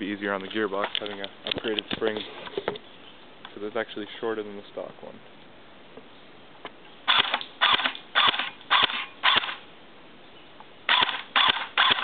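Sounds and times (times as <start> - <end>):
airsoft gun single shots: 7.1 - 9.6, 10.9 - 12.0.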